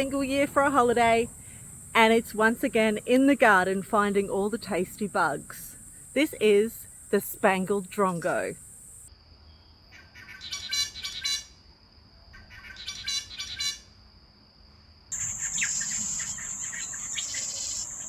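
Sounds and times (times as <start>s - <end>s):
high insect drone: 0.0s - 9.2s, 14.4s - 18.0s
drongo metallic twanging calls: 15.2s - 18.0s
faint bird chirps: 15.2s - 18.0s.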